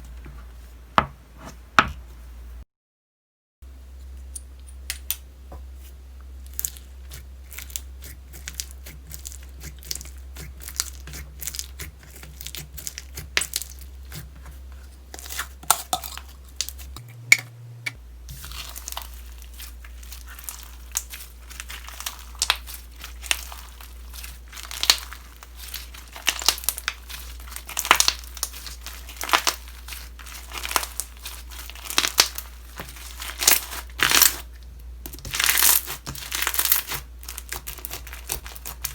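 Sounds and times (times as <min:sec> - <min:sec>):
slime squished by hand: 0:18.3 - 0:38.9.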